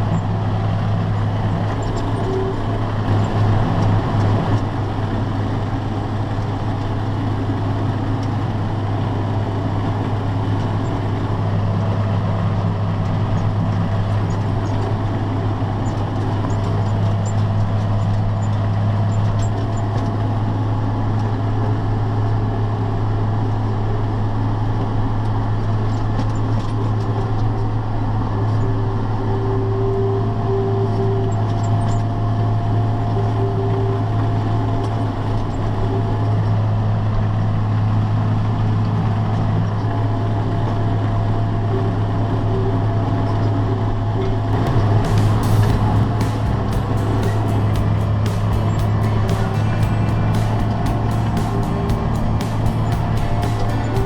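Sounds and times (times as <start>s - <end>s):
tractor engine running: 0.0s - 21.1s, 44.5s - 54.0s.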